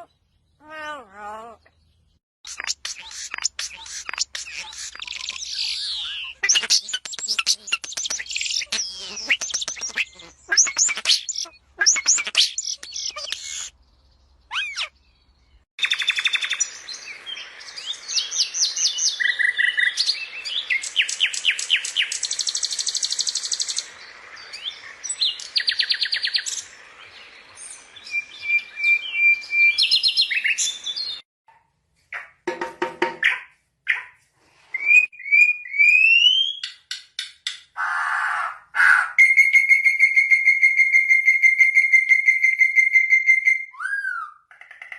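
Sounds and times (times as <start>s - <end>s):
small birds singing and chirping: 0.0s - 31.2s.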